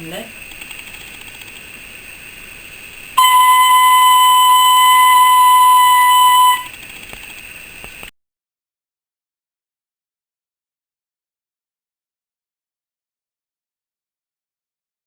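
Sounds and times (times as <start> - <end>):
fife playing high note: 3.2 - 6.7.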